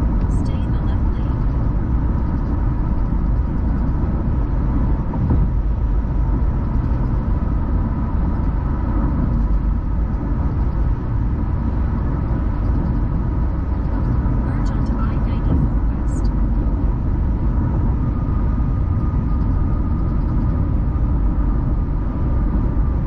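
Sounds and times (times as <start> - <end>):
car road and engine rumble: 0.0 - 23.0
faint steady hum: 0.0 - 23.0.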